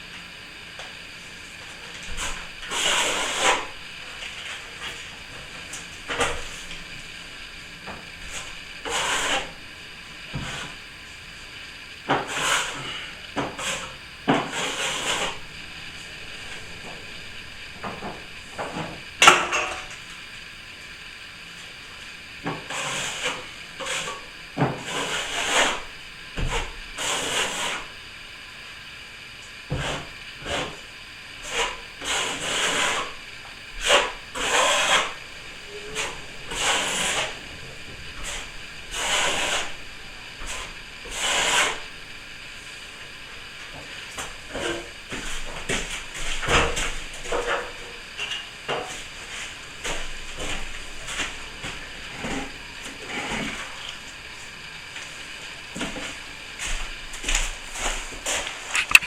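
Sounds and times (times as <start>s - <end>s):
plastering tool scraping plaster: 1.6s - 6.7s, 7.9s - 9.6s, 10.3s - 10.8s, 12.1s - 15.5s, 22.4s - 27.9s, 29.7s - 37.4s, 38.1s - 39.8s, 40.4s - 41.9s, 43.7s - 53.9s.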